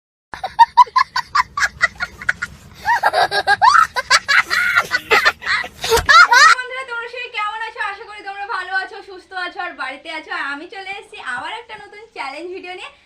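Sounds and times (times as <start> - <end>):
person laughing: 0.4 - 6.6.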